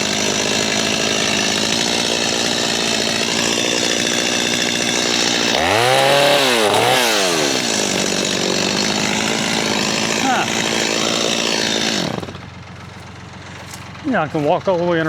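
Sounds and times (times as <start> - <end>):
gas chainsaw revving: 0.0 - 14.2.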